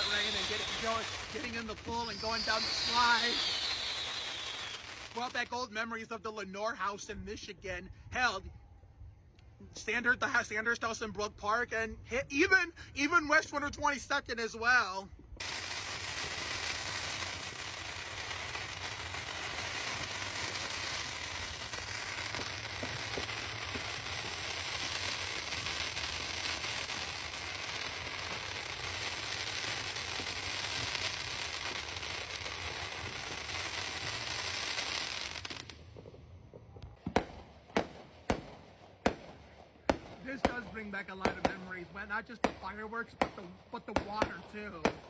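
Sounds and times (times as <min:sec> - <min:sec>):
fireworks crackling: 0:00.0 - 0:07.6, 0:15.3 - 0:45.0.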